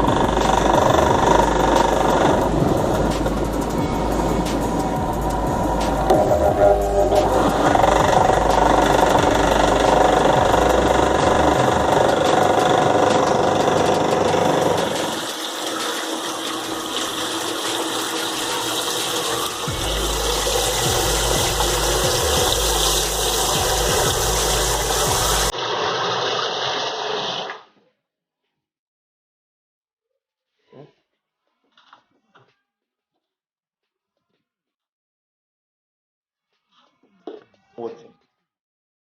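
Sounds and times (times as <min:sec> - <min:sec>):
motor low hum: 0:00.0 - 0:15.2, 0:19.6 - 0:25.5
washing machine churning: 0:00.0 - 0:25.5.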